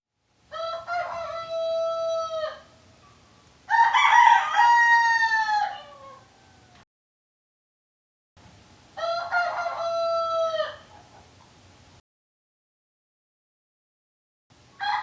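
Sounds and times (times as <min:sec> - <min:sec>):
rooster crowing: 0:00.5 - 0:02.7, 0:03.7 - 0:06.8, 0:09.0 - 0:11.0, 0:14.8 - 0:15.0.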